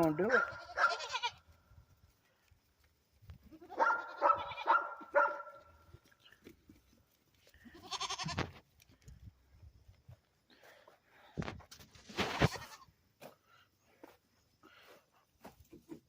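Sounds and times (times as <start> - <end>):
goat bleating: 0.3 - 1.5, 3.4 - 5.1, 7.5 - 8.6, 12.3 - 12.9.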